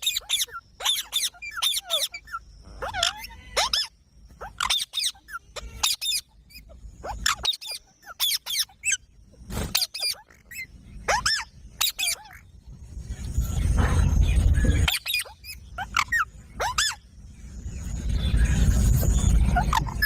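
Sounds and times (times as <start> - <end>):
parakeet squawking: 0.0 - 9.0, 9.8 - 12.4, 14.8 - 17.0, 19.4 - 20.0.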